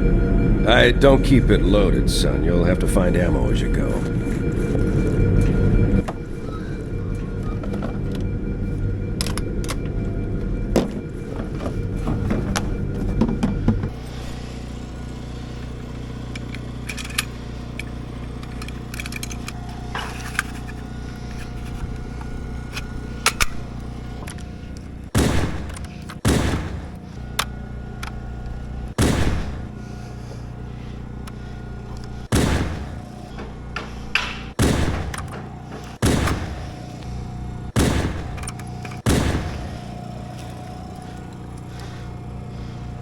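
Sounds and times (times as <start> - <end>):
steady low hum: 0.0 - 43.0
loud gunshot-like bangs: 25.1 - 27.1, 28.9 - 29.8, 32.3 - 33.3, 34.5 - 36.8, 37.8 - 38.4, 39.0 - 40.0.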